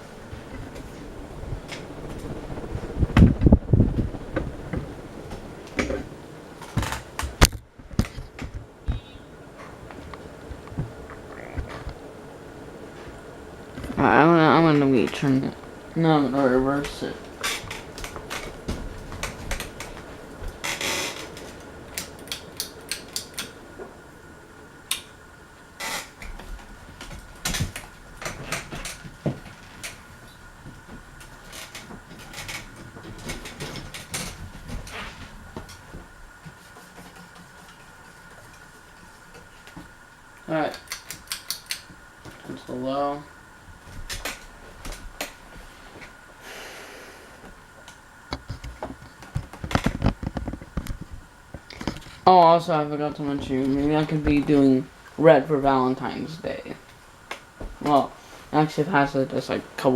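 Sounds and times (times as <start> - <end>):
low rumble: 0.0 - 21.9
ceiling fan motor hum: 0.0 - 59.9
small clicks: 40.7 - 41.9
soft breath-like hiss: 45.6 - 47.6, 58.1 - 58.6.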